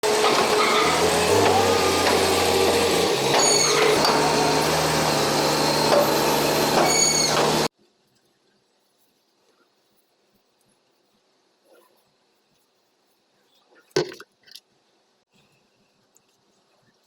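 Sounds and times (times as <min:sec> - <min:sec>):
heavy vehicle engine drone: 0:00.0 - 0:07.7
brief high squeals: 0:03.4 - 0:04.1, 0:06.8 - 0:07.5.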